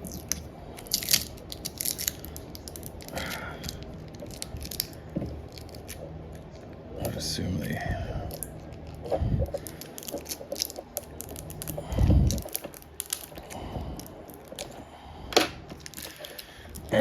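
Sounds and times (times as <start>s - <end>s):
tools tapping phone parts: 15.3s - 15.6s.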